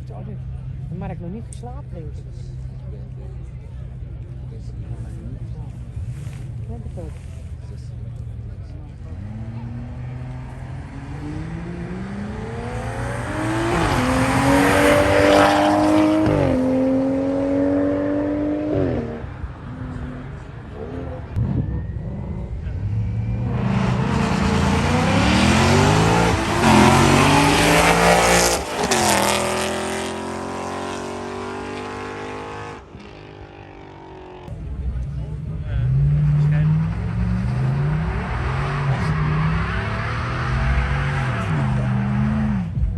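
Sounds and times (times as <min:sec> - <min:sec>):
car engine accelerating hard: 0:00.0 - 0:42.9.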